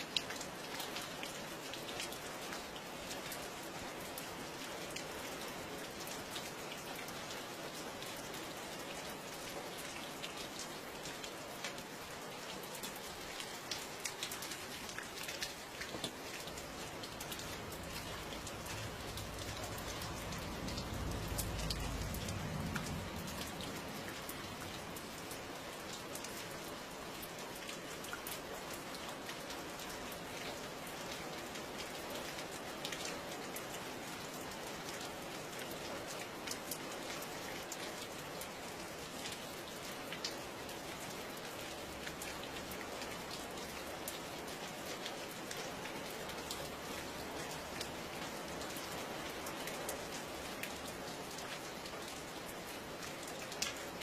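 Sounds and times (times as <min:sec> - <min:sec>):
raindrops striking close by: 0:00.0 - 0:54.0
steady rain falling: 0:00.0 - 0:54.0.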